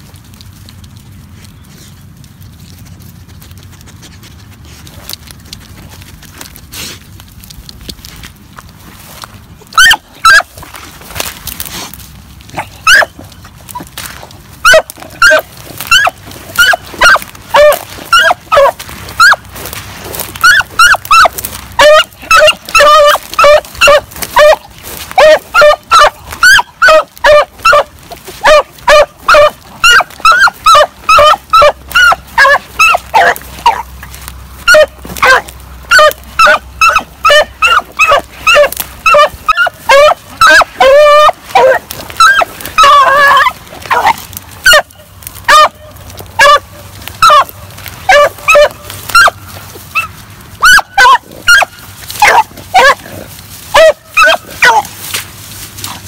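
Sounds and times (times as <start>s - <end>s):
dog barking: 9.8s - 10.5s, 12.6s - 13.1s, 14.6s - 19.4s, 20.4s - 24.6s, 25.2s - 33.9s, 34.7s - 45.8s, 46.4s - 46.6s, 47.2s - 47.5s, 48.1s - 53.0s, 53.7s - 54.9s.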